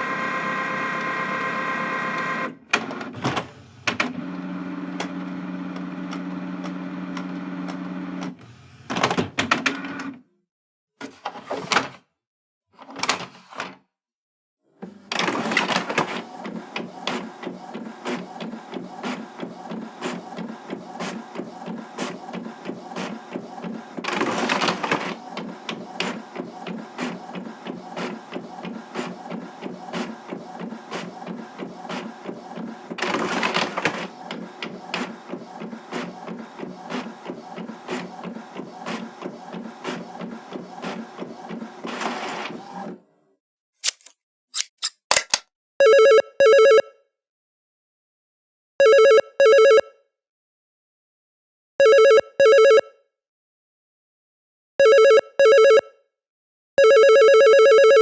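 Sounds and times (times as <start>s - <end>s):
office printer running: 0.0s - 10.1s, 14.8s - 43.1s.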